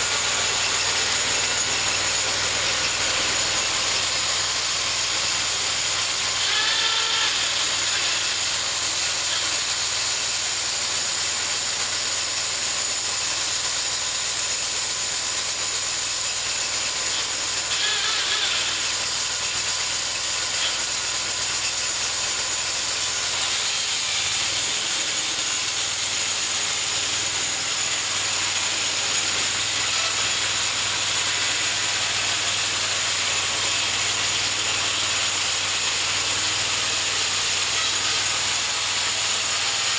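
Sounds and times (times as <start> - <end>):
bandsaw mill engine running: 0.0 - 39.9.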